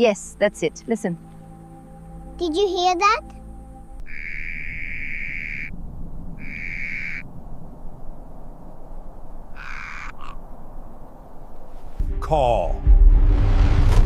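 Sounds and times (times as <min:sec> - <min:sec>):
hoarse breathy bird calls: 0:04.0 - 0:07.5, 0:09.4 - 0:10.6
low rumble of ambience: 0:04.7 - 0:09.6.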